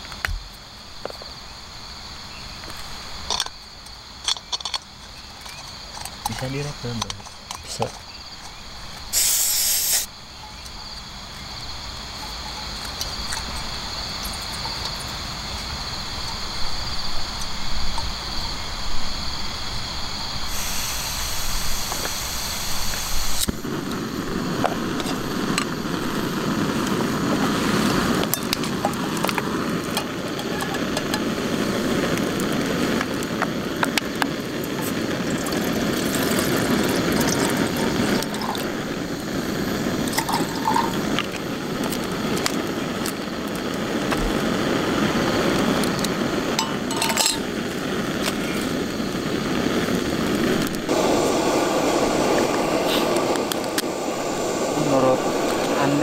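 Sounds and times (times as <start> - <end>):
gas stove hissing: 0.0 - 56.0
insect chirping: 0.0 - 56.0
short sharp hiss: 9.1 - 10.2, 20.5 - 23.6, 52.4 - 55.8.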